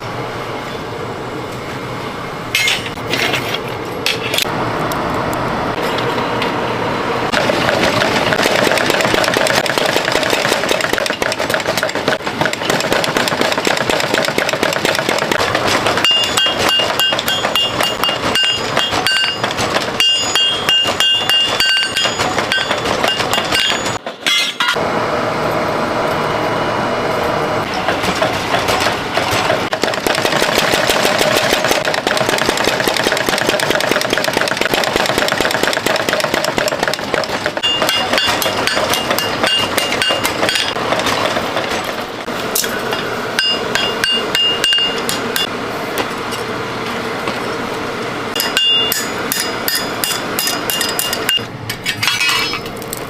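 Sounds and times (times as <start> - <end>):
loud mechanical noise: 0.0 - 53.0
metal striking metal: 16.0 - 24.8, 37.6 - 40.8, 42.6 - 45.5, 48.4 - 52.7
ringing metallic tone: 16.0 - 24.8, 37.6 - 40.3, 43.4 - 45.5, 48.4 - 51.5.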